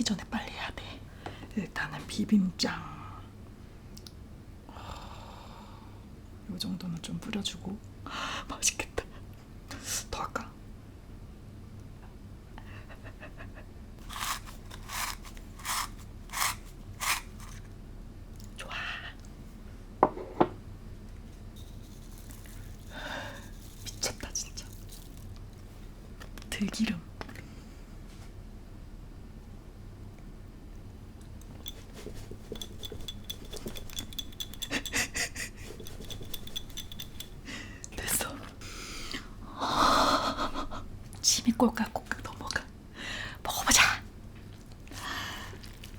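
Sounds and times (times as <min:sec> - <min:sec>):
rasping strokes: 0:14.0 - 0:17.6
utensils clinking against a bowl: 0:31.5 - 0:37.5.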